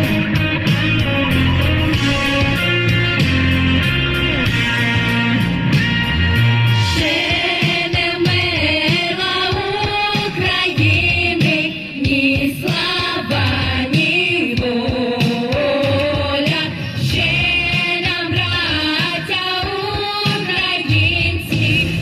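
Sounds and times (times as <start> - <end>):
instrumental accompaniment with beat: 0.0 - 22.0
female voices singing: 7.0 - 22.0.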